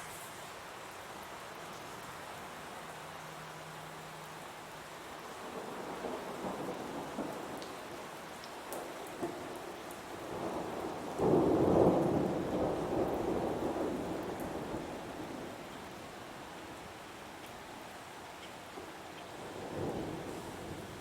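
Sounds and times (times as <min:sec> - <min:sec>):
heavy rain: 0:00.0 - 0:21.0
thunder rumbling: 0:08.8 - 0:15.6.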